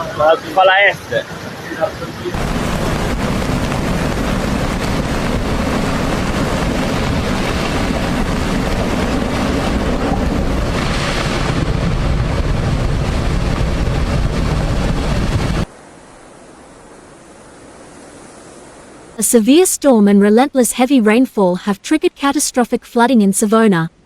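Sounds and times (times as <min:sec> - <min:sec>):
wind buffeting microphone: 0:02.4 - 0:15.7.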